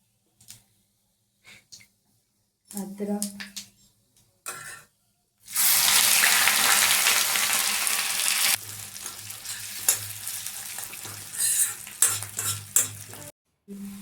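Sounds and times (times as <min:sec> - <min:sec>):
ginger sizzling in hot ghee: 0:05.5 - 0:13.3
spoon scraping a pan: 0:08.4 - 0:13.3.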